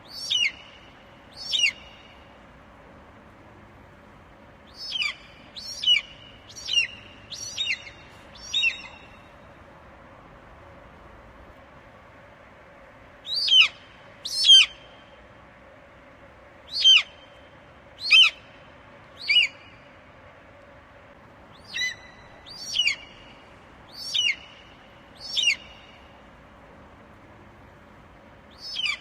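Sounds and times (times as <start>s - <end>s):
eagle calling: 0.1s - 0.8s, 1.4s - 2.1s, 4.7s - 9.2s, 21.6s - 23.2s, 23.9s - 24.6s, 25.2s - 26.0s, 28.6s - 29.0s.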